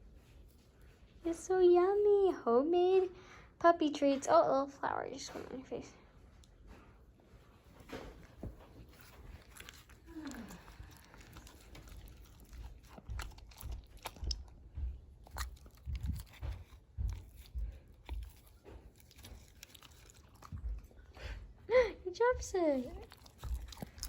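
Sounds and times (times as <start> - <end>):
dog crunching and chewing treat: 7.4 - 21.6, 22.2 - 24.0.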